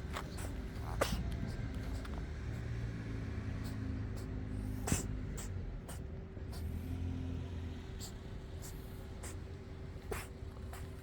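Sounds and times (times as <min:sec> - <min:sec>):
cat sneezing: 0:00.4 - 0:01.2, 0:10.1 - 0:11.0.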